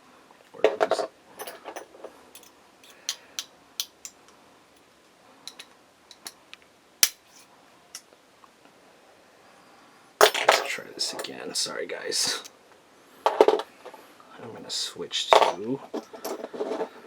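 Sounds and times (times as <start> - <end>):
small steel tools clicking: 2.4 - 4.2.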